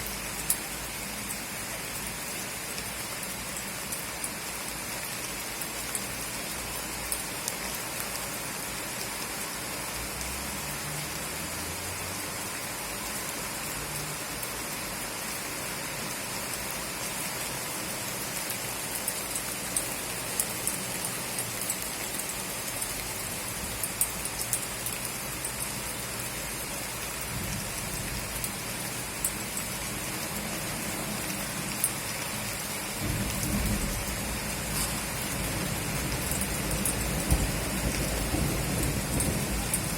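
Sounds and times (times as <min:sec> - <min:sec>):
heavy rain: 0:00.0 - 0:39.9
raindrops ticking on hard surface: 0:00.0 - 0:39.9
thunder rumbling: 0:33.0 - 0:39.9.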